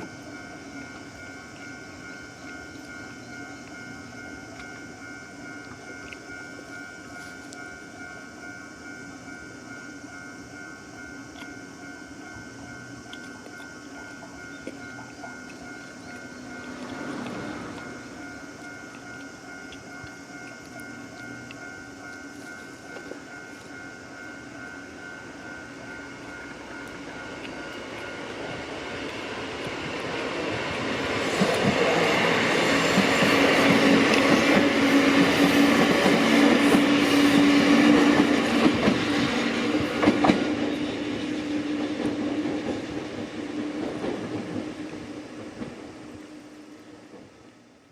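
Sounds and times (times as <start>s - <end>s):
level crossing warning bell: 0.0s - 45.4s
train hum: 0.0s - 47.9s
train wheels clattering over rails: 27.8s - 46.0s.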